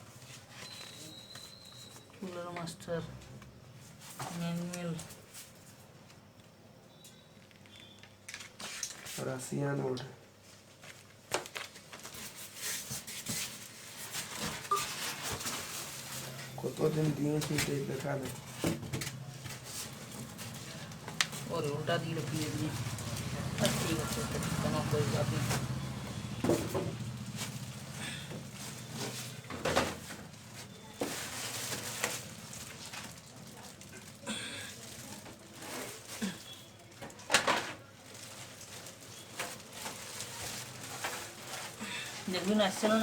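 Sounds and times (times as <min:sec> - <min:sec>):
packaging rustling: 0:10.5 - 0:43.0.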